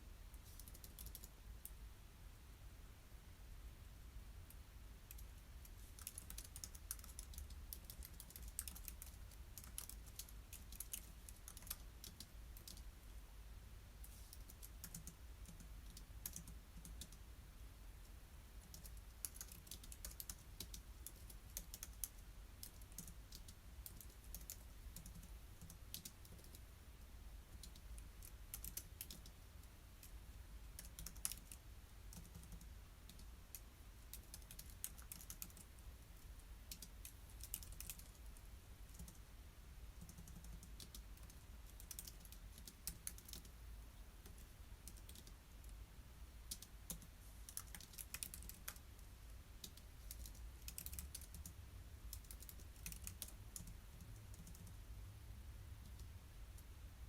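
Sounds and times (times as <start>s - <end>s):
low steady hum: 0.0s - 57.0s
typing on computer keyboard: 0.5s - 1.3s, 5.1s - 12.9s, 14.3s - 17.2s, 18.6s - 26.6s, 27.5s - 29.4s, 30.8s - 35.7s, 36.7s - 38.3s, 38.9s - 39.2s, 40.0s - 43.5s, 44.2s - 45.4s, 46.5s - 48.8s, 49.6s - 54.8s.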